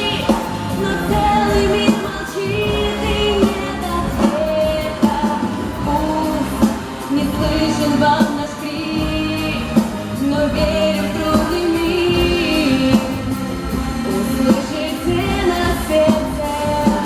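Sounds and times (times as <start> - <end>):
pop song over sound system: 0.0 - 17.0.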